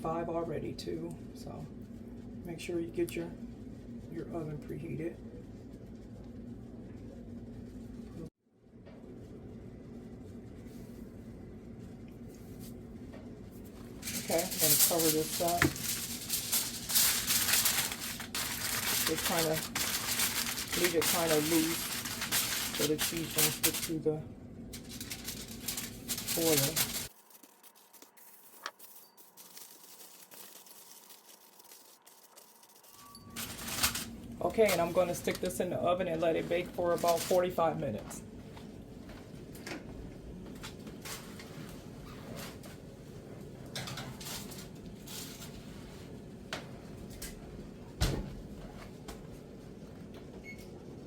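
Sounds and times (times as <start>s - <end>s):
aluminum foil crinkling: 14.0s - 24.1s, 24.7s - 38.2s.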